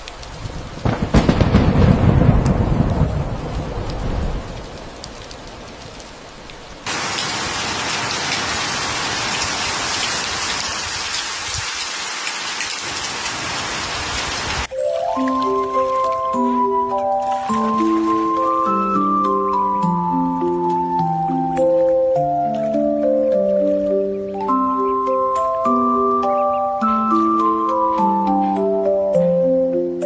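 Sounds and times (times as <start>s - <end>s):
heavy rain: 0.0s - 29.2s
low rumble of thunder: 0.2s - 6.0s.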